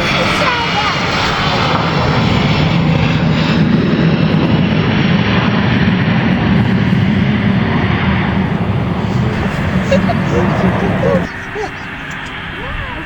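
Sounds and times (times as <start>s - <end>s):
airplane engine drone: 0.0s - 13.0s.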